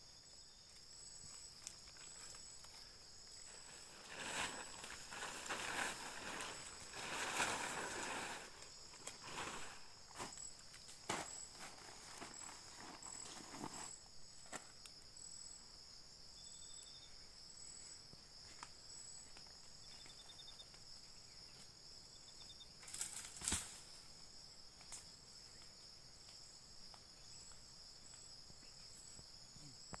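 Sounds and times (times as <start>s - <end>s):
insect pulsing chirp: 0.0s - 30.0s
insect rapid trills: 0.0s - 30.0s
insects buzzing: 0.0s - 30.0s
rustle or crunch: 1.3s - 14.8s, 22.8s - 23.9s.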